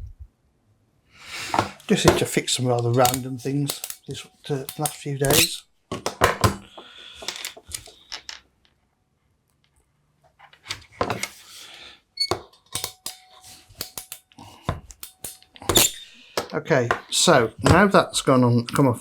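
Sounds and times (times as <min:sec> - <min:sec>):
hand tools clicking and snipping wire: 0:01.5 - 0:08.3, 0:12.2 - 0:17.8.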